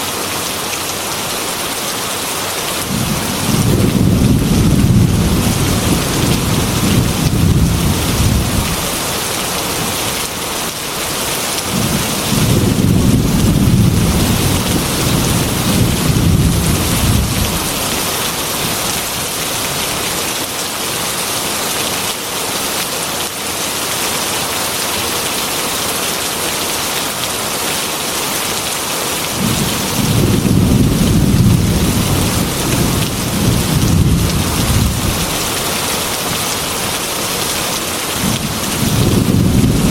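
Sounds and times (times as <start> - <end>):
heavy rain on a metal roof: 0.0 - 39.9
thunder rumbling: 2.9 - 9.0, 11.7 - 18.8, 29.4 - 35.5, 38.2 - 39.9.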